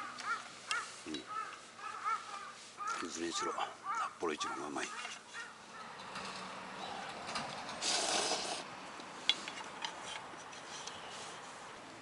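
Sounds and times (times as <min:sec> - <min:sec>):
person slurping noodles: 0:07.8 - 0:08.7.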